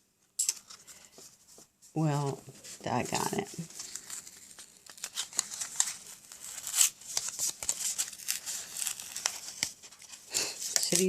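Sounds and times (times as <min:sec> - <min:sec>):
paper rustling and crinkling: 0:00.5 - 0:11.0
paper tearing: 0:03.1 - 0:11.0.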